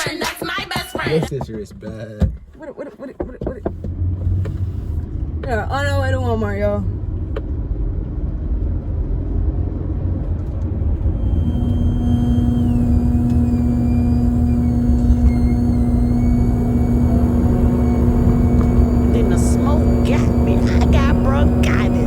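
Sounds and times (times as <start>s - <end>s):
car engine and road rumble: 1.0s - 22.0s
hum with thin high tones: 11.1s - 22.0s.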